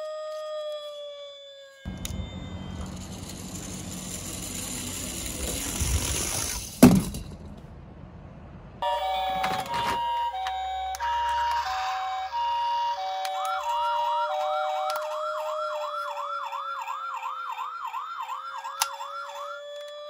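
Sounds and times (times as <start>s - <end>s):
electronic two-tone toy siren: 0.0s - 6.1s, 8.8s - 20.0s
toy siren wail: 0.0s - 6.1s, 8.8s - 20.0s
clicks: 1.9s - 3.8s, 13.2s - 16.1s
toy cars rolling on hard surface: 2.0s - 7.4s, 9.0s - 20.0s.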